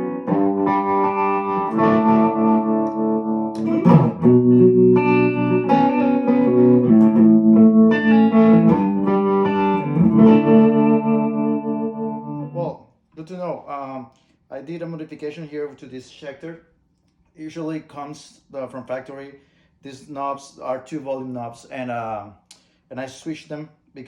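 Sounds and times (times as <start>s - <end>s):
electric guitar chords: 0.0s - 12.7s
scratchy guitar strum: 0.0s - 12.7s.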